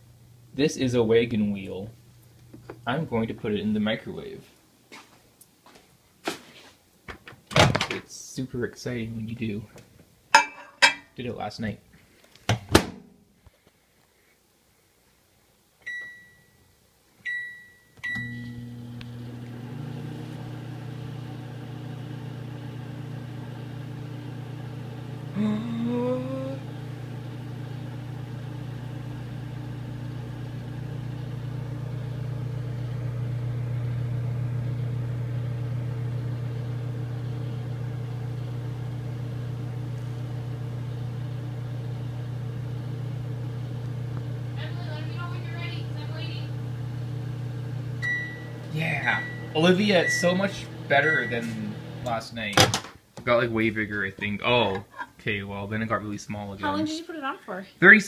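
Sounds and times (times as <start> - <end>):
microwave keypad beeping: 15.9 - 16.5, 17.3 - 18.7, 48.0 - 51.7
microwave humming: 17.3 - 52.9.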